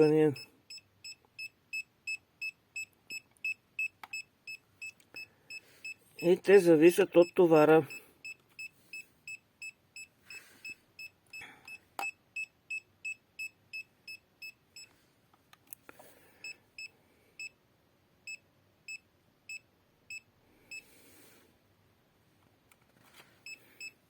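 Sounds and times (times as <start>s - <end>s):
meter alarm beeping: 0.0s - 14.9s.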